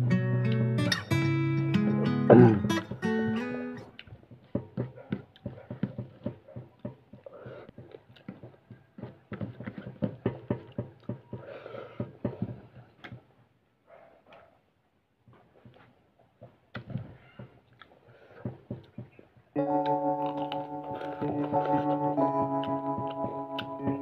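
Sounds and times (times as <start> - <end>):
person chewing with mouth smacks: 3.8 - 10.0, 16.7 - 23.8.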